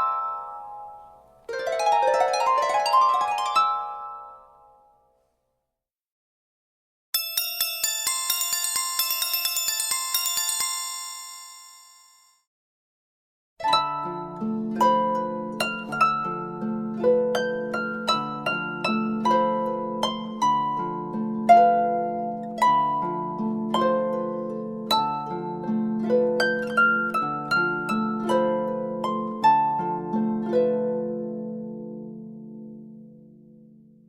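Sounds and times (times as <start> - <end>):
plucked ringtone melody: 7.2 - 12.3.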